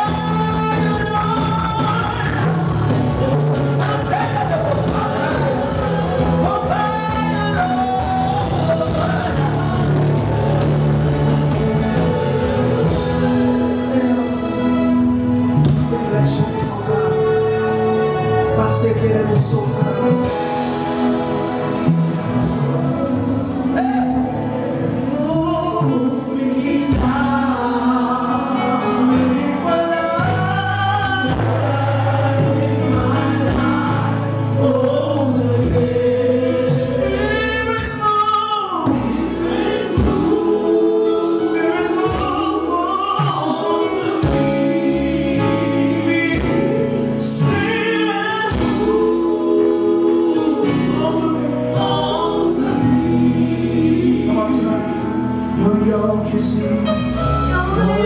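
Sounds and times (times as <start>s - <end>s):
choir singing gospel: 0.0s - 58.0s
low musical accompaniment: 0.0s - 58.0s.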